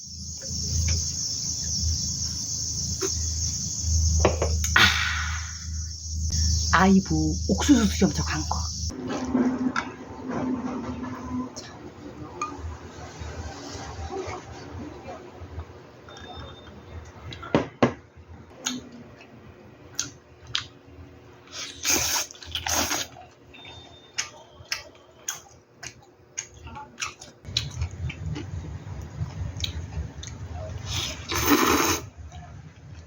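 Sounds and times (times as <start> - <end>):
loud wet slurps: 30.9 - 32.1.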